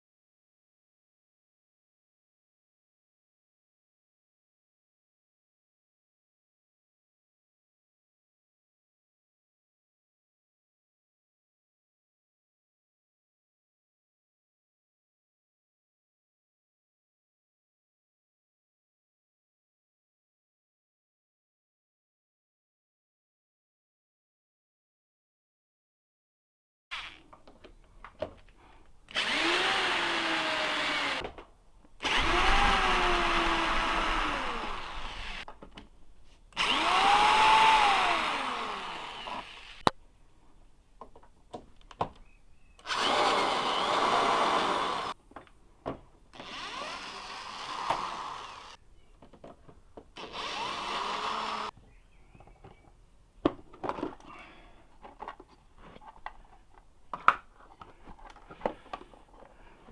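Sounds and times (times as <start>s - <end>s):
electric drill-driver running: 29.1s - 31.2s, 32.0s - 35.5s, 36.6s - 39.9s, 42.8s - 45.2s, 46.4s - 48.8s, 50.2s - 51.7s.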